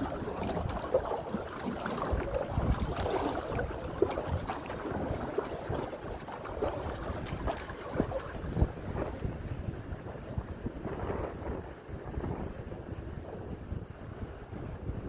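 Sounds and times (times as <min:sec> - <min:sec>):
lake waves lapping: 0:00.0 - 0:10.9
wind gusting over microphone: 0:00.0 - 0:15.0.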